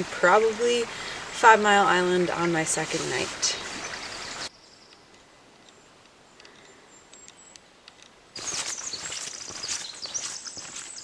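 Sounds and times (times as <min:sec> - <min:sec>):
footsteps on a trail: 0:08.4 - 0:11.0
high bird chirps: 0:08.4 - 0:11.0.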